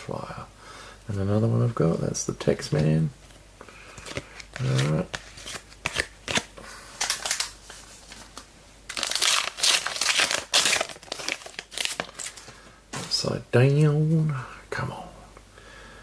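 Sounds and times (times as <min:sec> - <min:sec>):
wrapper crinkling and tearing: 0:04.0 - 0:12.5.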